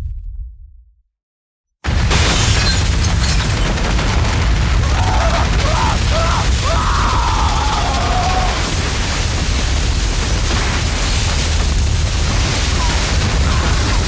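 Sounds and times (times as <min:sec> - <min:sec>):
crashing debris: 0:01.9 - 0:14.0
deep earthquake rumble: 0:02.9 - 0:14.0
person screaming: 0:04.8 - 0:08.8.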